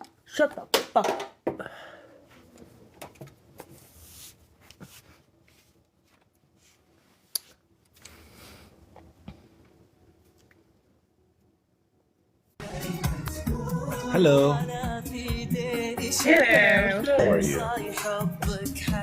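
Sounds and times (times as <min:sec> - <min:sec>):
soft rustles: 0:02.2 - 0:08.6.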